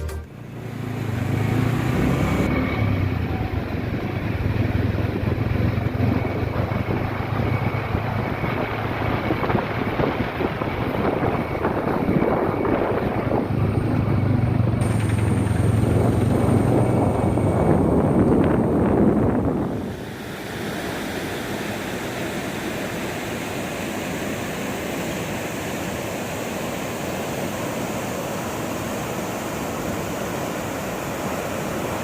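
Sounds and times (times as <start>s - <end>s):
wind rumbling on microphone: 1.1s - 20.6s.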